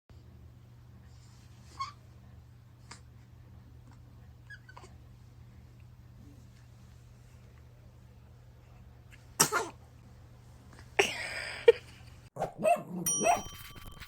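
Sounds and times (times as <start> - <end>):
baby sneezing: 9.4 - 9.8
bell-like ding: 13.1 - 14.0.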